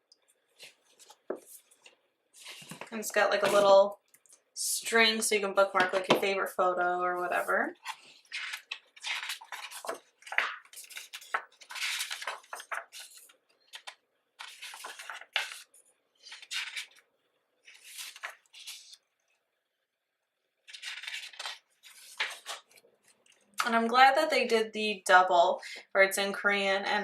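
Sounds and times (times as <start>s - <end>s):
book pages turning: 0.4s - 3.7s, 7.3s - 17.0s, 17.6s - 19.2s, 20.6s - 23.5s.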